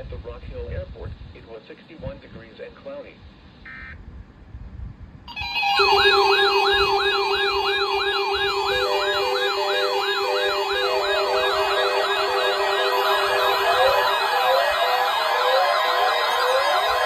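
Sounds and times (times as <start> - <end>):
steady low siren tone: 5.3 - 17.0
two-tone hi-lo siren: 5.3 - 17.0
yelp siren: 5.3 - 17.0.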